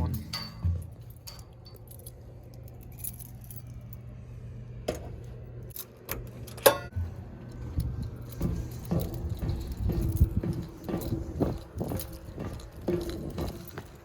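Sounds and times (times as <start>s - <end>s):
metallic clinks and jangles: 0.0s - 4.2s, 7.5s - 14.0s
steady low hum: 0.0s - 14.0s.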